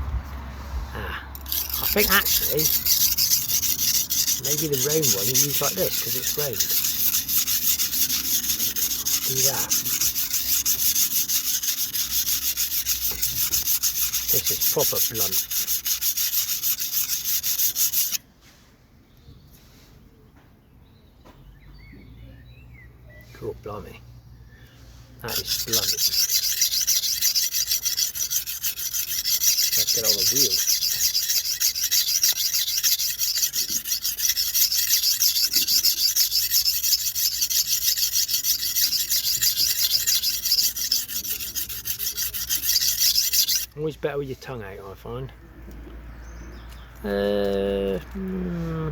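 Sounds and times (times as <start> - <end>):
knife on sharpening stone: 1.4 - 18.2, 25.3 - 43.7
faint bird chirps: 19.1 - 25.1.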